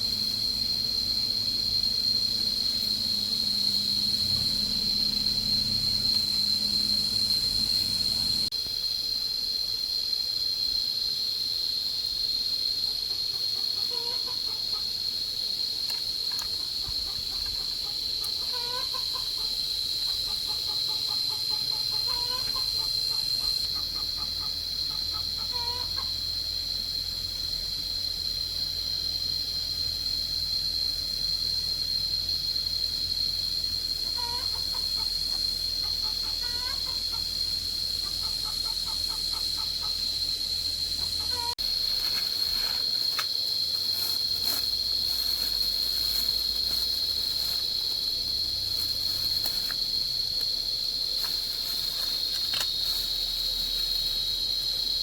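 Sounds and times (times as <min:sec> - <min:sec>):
high-pitched whine: 0:00.0 - 0:08.5
chickens clucking: 0:16.5 - 0:24.5.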